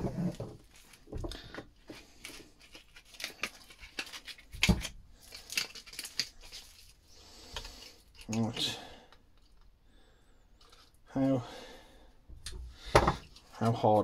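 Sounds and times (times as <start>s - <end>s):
small metal parts clicking and scraping: 5.2s - 8.7s.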